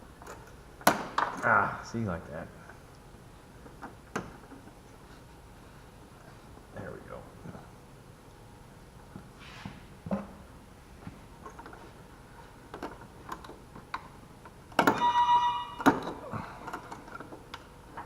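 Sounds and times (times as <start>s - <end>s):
metallic clatter and ringing: 14.8s - 17.2s.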